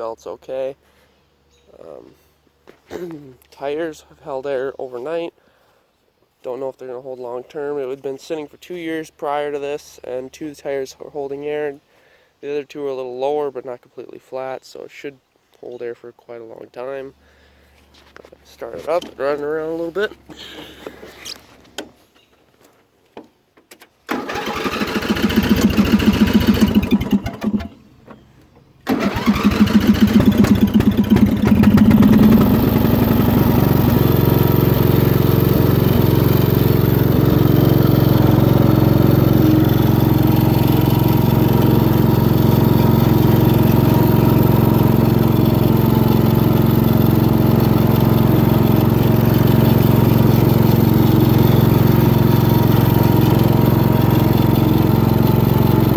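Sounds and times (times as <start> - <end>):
mower engine starting and running: 24.1 - 55.9.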